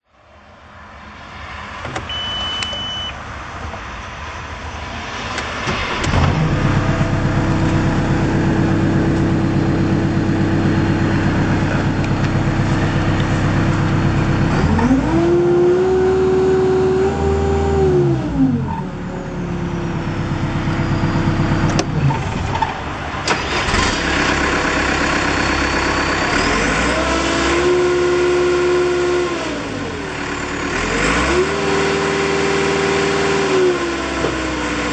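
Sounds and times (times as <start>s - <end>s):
diesel engine starting and idling: 1.8s - 3.1s, 5.2s - 34.9s
engine revving: 5.1s - 34.9s.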